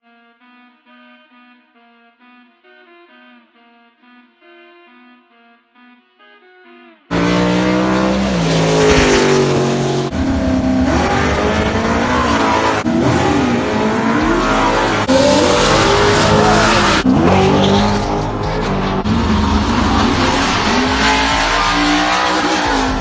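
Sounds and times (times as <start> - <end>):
race car engines revving: 7.1 - 23.0.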